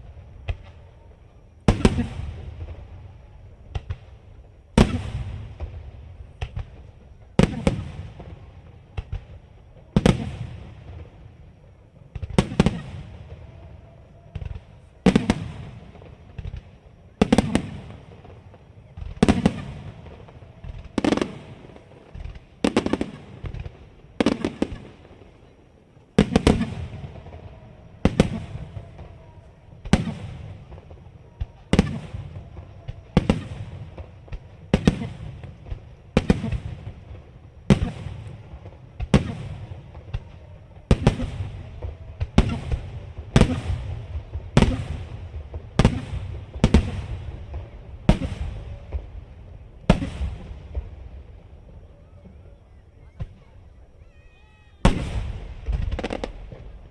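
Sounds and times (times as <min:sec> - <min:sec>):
firework shells bursting: 0:54.8 - 0:56.9.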